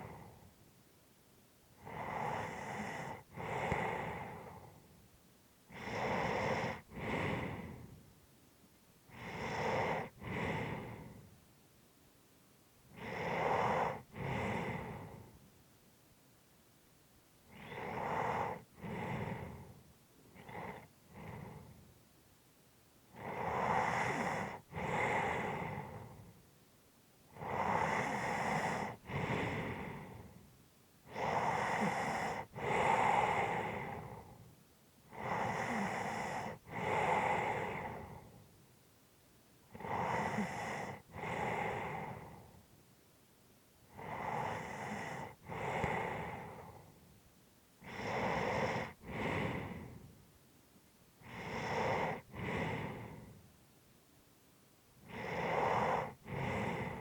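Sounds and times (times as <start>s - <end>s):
person breathing heavily: 0.0s - 0.5s, 1.9s - 4.9s, 5.7s - 8.0s, 9.1s - 11.4s, 13.0s - 15.4s, 27.4s - 30.4s, 31.1s - 34.4s, 43.9s - 47.0s, 47.8s - 50.1s, 51.2s - 53.4s, 55.0s - 57.0s.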